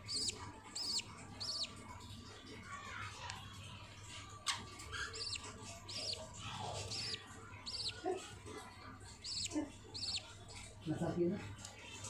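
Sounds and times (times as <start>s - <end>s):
budgerigars chirping: 0.0s - 1.8s, 5.0s - 8.2s, 9.2s - 10.3s.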